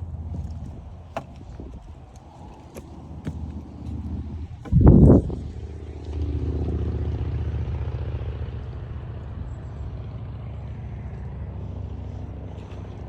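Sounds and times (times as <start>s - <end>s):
motor engine droning: 0.0s - 13.0s.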